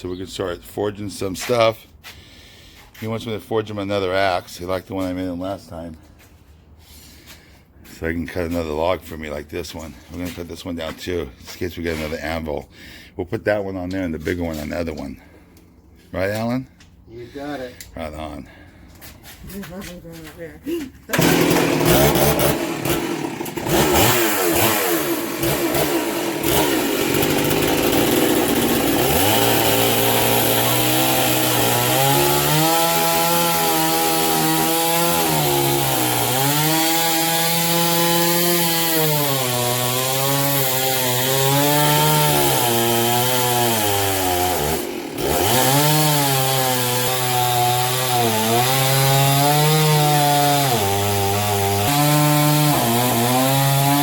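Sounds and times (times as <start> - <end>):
chainsaw cutting log: 21.1 - 54.0.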